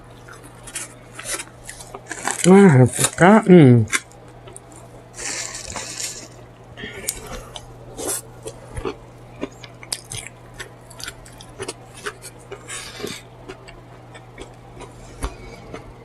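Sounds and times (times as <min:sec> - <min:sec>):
steady low hum: 0:00.0 - 0:16.0
wet chewing and lip smacking: 0:07.0 - 0:16.0.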